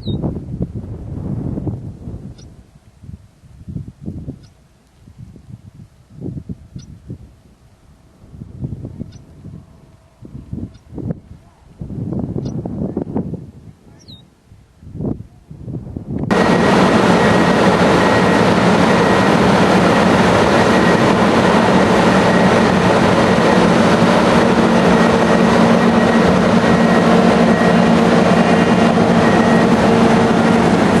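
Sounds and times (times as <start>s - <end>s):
constant mechanical hum: 0.0s - 31.0s
combine harvester running: 16.2s - 31.0s.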